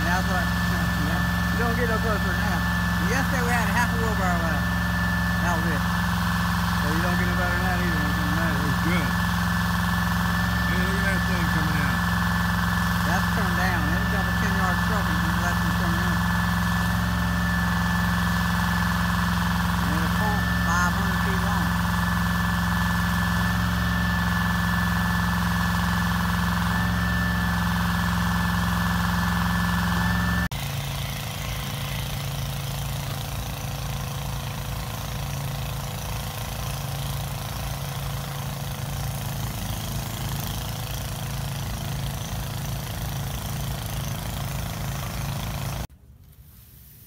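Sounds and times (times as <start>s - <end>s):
diesel truck engine running: 0.0s - 45.9s
high steady whine: 0.0s - 45.9s.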